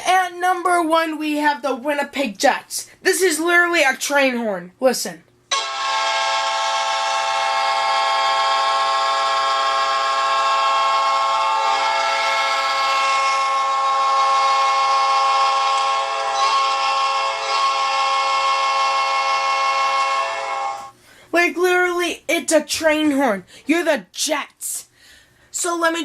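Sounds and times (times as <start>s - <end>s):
air horn blast: 5.5s - 21.0s.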